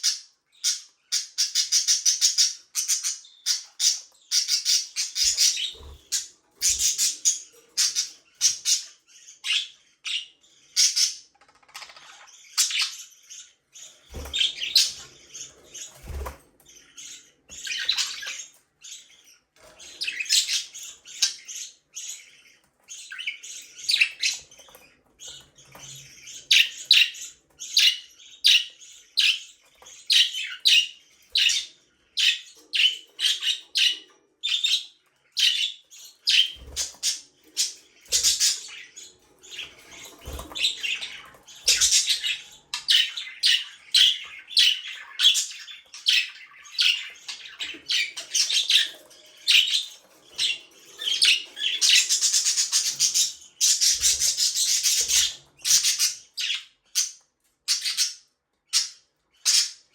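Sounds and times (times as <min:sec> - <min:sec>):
budgerigar chirping: 0:30.1 - 0:57.1.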